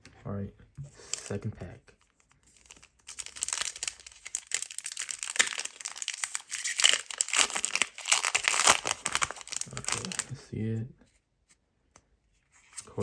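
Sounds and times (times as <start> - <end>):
foil wrapper crinkling: 2.4 - 10.3
foil wrapper tearing: 2.6 - 10.3.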